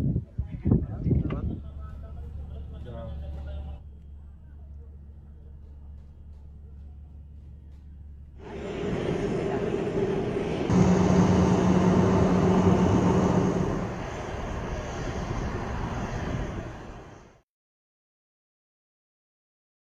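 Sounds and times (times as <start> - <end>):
jet engines rushing and humming: 8.4 - 17.4.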